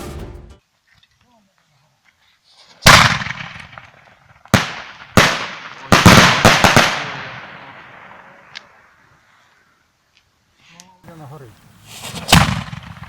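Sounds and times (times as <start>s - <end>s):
firework bangs echoing: 11.8s - 13.0s.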